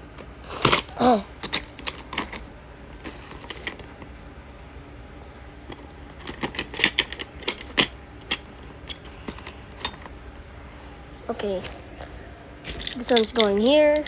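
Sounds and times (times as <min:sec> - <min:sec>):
knives clicking and clacking: 0:12.7 - 0:14.0.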